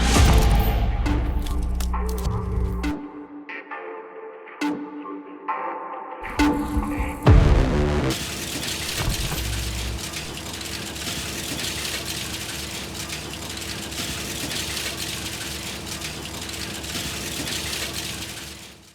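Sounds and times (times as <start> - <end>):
low rumble: 0.0 - 2.9, 6.2 - 8.2
recycling machinery clattering: 6.2 - 18.9.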